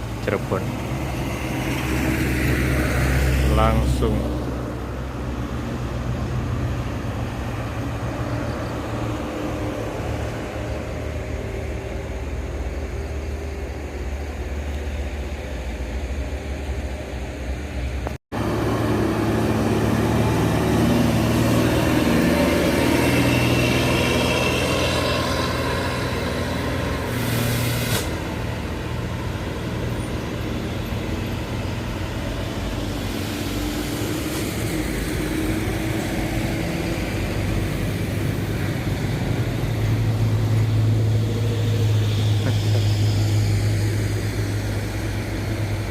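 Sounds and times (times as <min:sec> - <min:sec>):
heavy diesel vehicles passing: 0:00.0 - 0:45.9
air brake hiss: 0:27.1 - 0:28.2.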